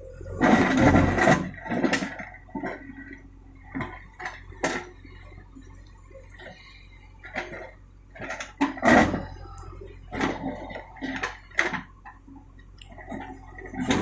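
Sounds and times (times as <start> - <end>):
faint low hum: 0.0 - 14.0
irregular knocks and clatter: 0.4 - 6.6.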